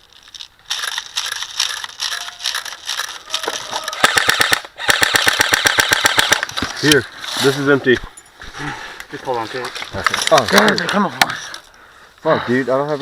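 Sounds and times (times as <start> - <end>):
airsoft guns firing: 4.0 - 6.5.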